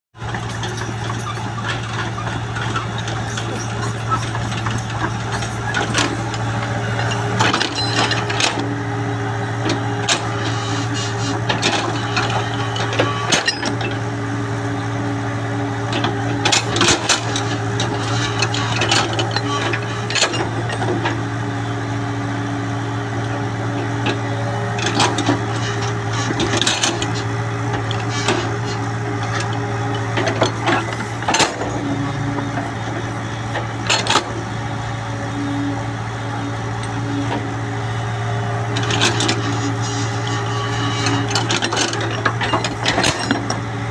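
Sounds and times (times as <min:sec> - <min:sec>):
excavator bucket clanking: 0:00.2 - 0:08.7, 0:15.9 - 0:21.3, 0:23.8 - 0:34.6, 0:38.6 - 0:43.7
excavator diesel engine running: 0:00.2 - 0:43.9.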